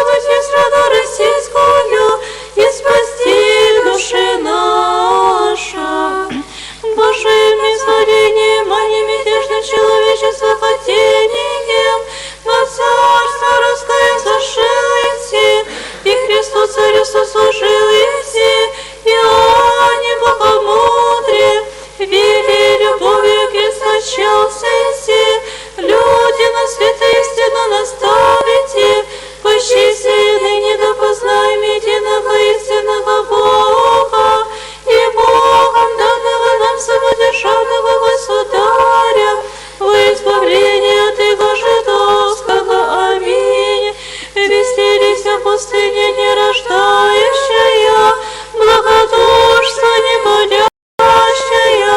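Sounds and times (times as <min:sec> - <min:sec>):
choir singing chant: 0:00.0 - 0:51.9.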